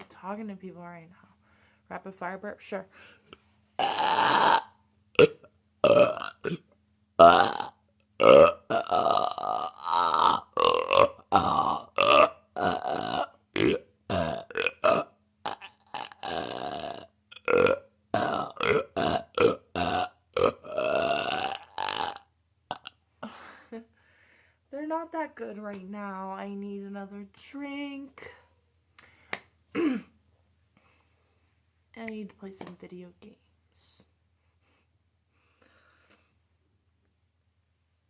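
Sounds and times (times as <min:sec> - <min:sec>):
woman burping: 0:03.8 - 0:06.6, 0:07.2 - 0:23.4, 0:29.7 - 0:30.2.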